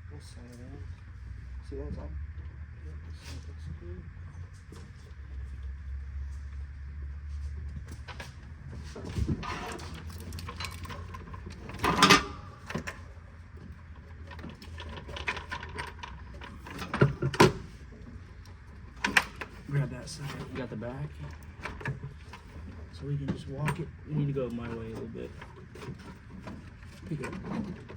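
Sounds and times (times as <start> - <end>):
steady low hum: 0.0 - 27.9
parts knocking and clattering: 7.8 - 27.9.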